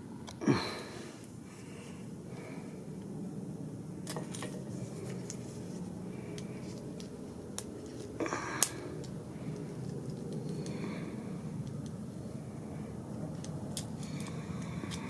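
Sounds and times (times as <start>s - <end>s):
steady low hum: 0.0s - 15.0s.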